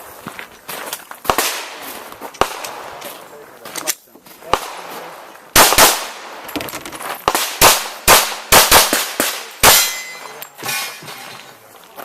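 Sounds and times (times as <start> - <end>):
pistol shots: 1.2 - 3.0, 4.4 - 6.5, 7.2 - 10.8
steel target ringing: 9.6 - 11.2.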